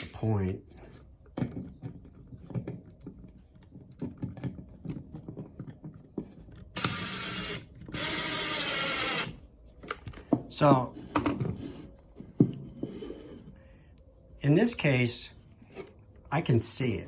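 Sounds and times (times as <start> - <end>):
electric screwdriver running: 6.8 - 9.3.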